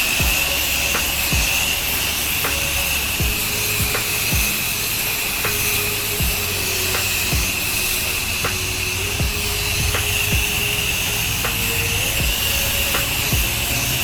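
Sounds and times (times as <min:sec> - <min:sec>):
music with deep bass kicks: 0:00.0 - 0:14.0
pressure washer spraying: 0:00.0 - 0:14.0.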